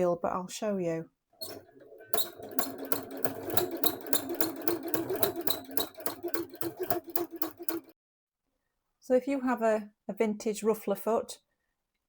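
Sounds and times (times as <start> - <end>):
sewing machine motor hum: 1.4 - 7.9
sewing machine squeaking: 1.4 - 7.9.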